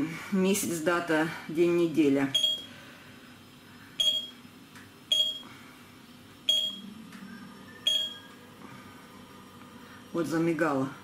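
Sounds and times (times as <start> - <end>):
digital alarm clock beeping: 2.3 - 2.7, 4.0 - 4.4, 5.1 - 5.5, 6.5 - 6.9, 7.7 - 8.4.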